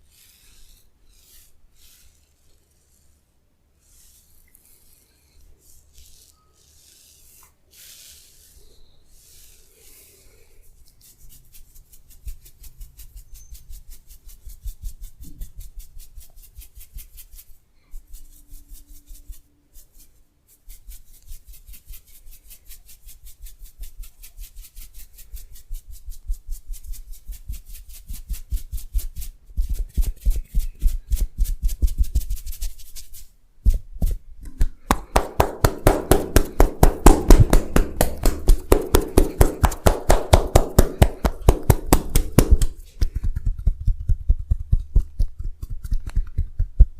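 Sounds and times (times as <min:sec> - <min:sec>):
hands rubbing skin and hair: 0:03.8 - 0:46.9
massage tapping hand strikes: 0:33.7 - 0:46.9.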